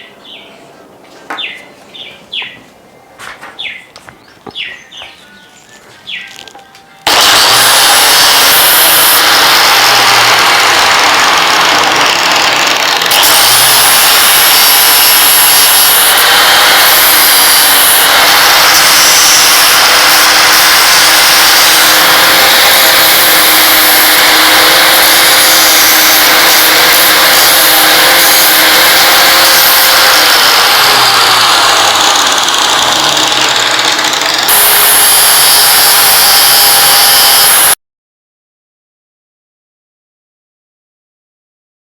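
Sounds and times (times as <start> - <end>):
electric power tool running: 7.0 - 37.8.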